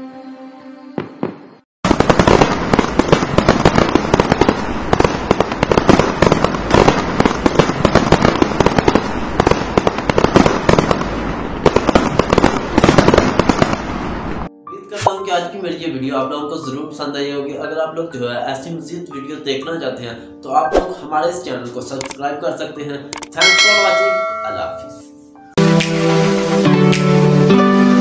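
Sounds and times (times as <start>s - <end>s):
fireworks bangs and crackles: 1.0s - 14.5s.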